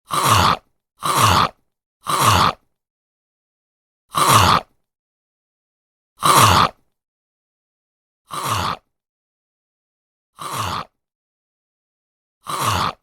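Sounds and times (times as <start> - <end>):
zombie bite sound effect: 0.1 - 2.6, 4.1 - 4.7, 6.2 - 6.8, 8.3 - 8.8, 10.4 - 10.9, 12.4 - 13.0.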